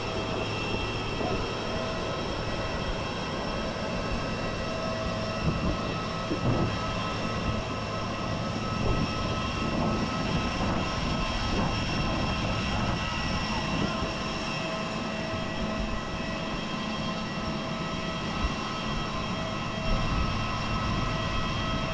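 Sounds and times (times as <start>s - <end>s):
jet machinery rumble and whine: 0.0s - 21.9s.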